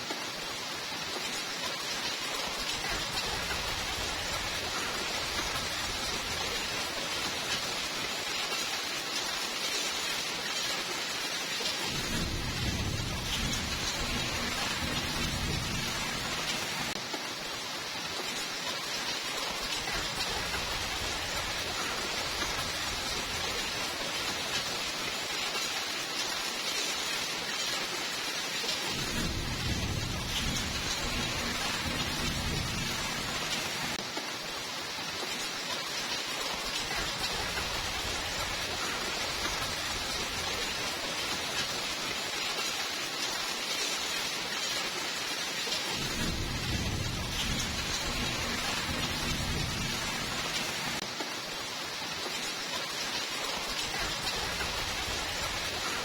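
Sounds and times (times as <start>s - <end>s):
steady rain hiss: 0.0s - 56.0s
low thunder rumbling: 11.8s - 17.0s, 28.9s - 34.0s, 45.9s - 51.0s.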